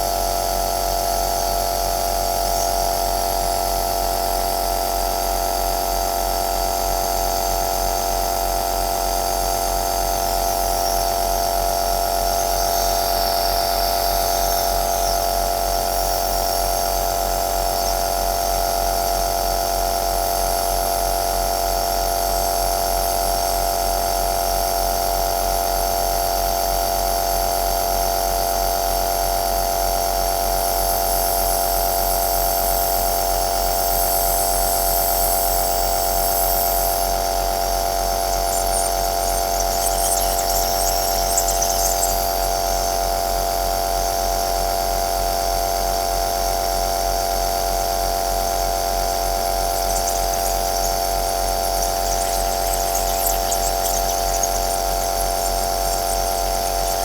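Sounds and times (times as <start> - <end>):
nebulizer motor hum: 38.3 - 42.8, 49.7 - 57.0.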